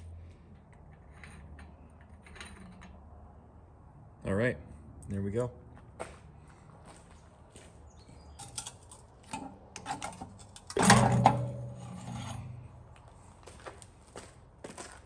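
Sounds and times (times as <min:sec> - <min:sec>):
metal tools clicking and scraping: 0:08.3 - 0:12.7
loud metal clank ringing: 0:10.7 - 0:12.7.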